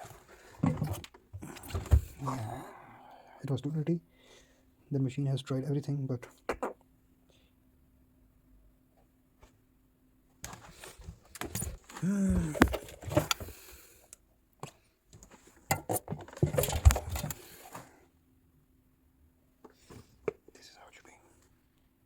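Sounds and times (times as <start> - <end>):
rattling clattering handling noises: 15.2 - 17.9.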